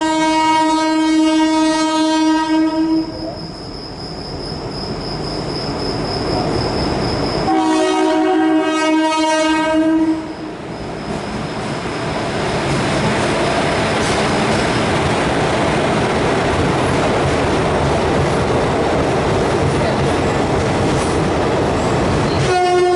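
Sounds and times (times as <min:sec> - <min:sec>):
locomotive horn blasts: 0:00.0 - 0:03.2, 0:07.4 - 0:10.6, 0:22.4 - 0:22.9
train wheels clattering on track: 0:03.1 - 0:07.9, 0:10.2 - 0:22.9.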